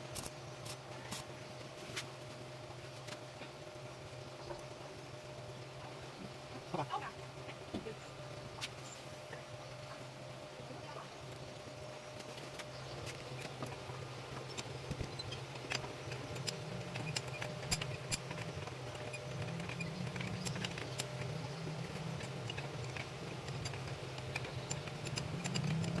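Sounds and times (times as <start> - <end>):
welding arc crackling and popping: 0.0 - 1.3
low hum: 0.0 - 26.0.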